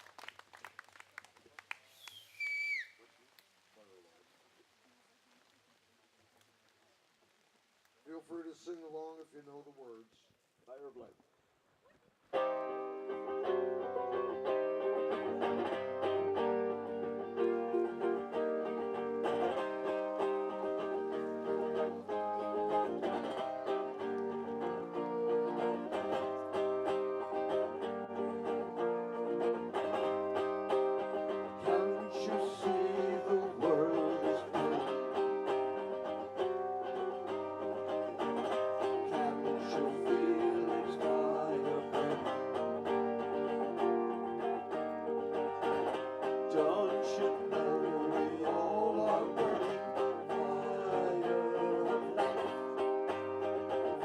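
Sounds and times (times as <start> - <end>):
guitar strumming: 12.3 - 54.0.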